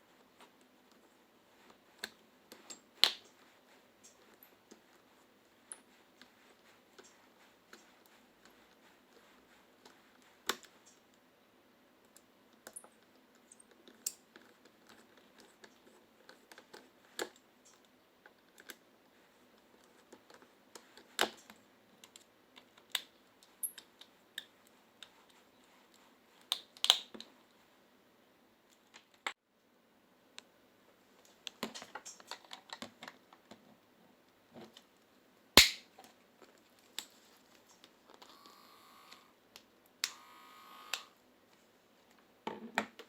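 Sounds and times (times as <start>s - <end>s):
small parts and tools clicking: 12.0s - 18.9s, 19.5s - 27.3s.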